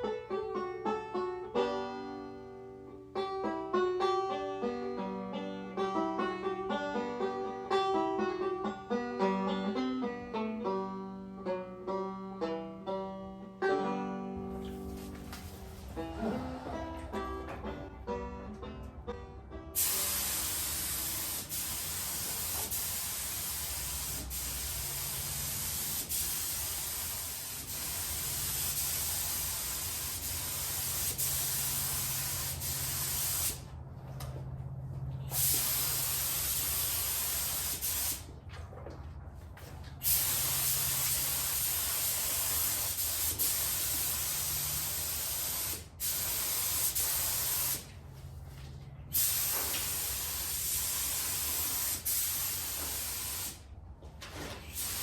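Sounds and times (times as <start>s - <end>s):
paint spray gun hissing: 19.8s - 33.6s, 35.3s - 38.2s, 40.0s - 47.9s, 49.1s - 53.6s, 54.7s - 55.0s.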